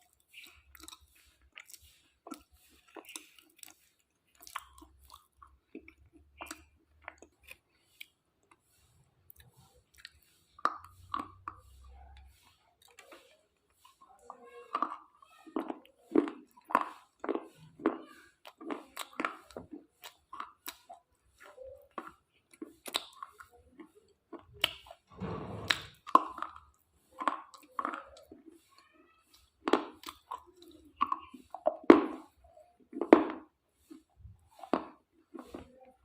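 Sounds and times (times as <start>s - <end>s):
chewing brittle slate pieces: 0.0s - 8.6s.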